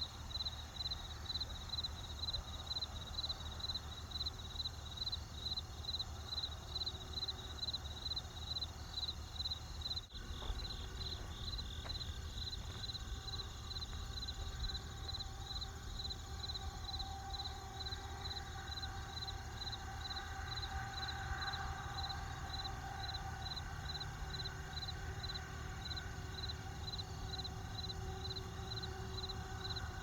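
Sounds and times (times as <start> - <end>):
crickets chirping: 0.0 - 30.0
campfire rumble: 10.1 - 16.4.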